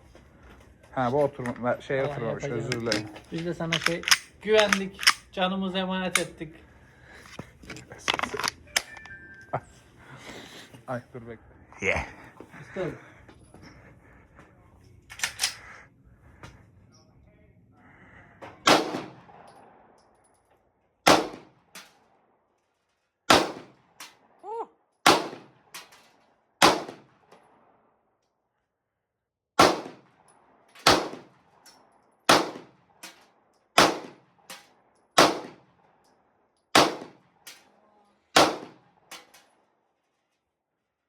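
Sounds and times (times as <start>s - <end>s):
rifle shots: 18.6s - 19.8s, 21.0s - 21.9s, 23.3s - 24.0s, 25.0s - 25.9s, 26.6s - 27.2s, 29.6s - 30.2s, 30.8s - 31.4s, 32.3s - 33.2s, 33.8s - 35.7s, 36.7s - 37.5s, 38.4s - 39.0s
faint distant gunshots: 29.6s - 30.2s, 30.8s - 31.5s, 32.3s - 33.0s, 33.8s - 34.4s, 35.2s - 35.7s, 36.8s - 37.4s, 38.4s - 39.0s.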